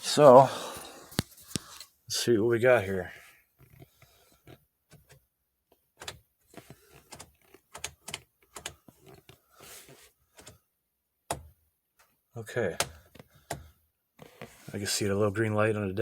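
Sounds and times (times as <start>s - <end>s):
clicks and knocks of controls: 4.5s - 9.3s, 10.3s - 10.6s, 11.3s - 13.6s.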